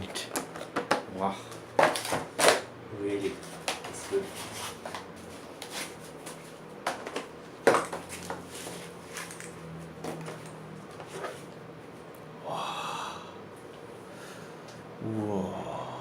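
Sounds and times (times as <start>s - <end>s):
packaging rustling: 5.6s - 11.4s.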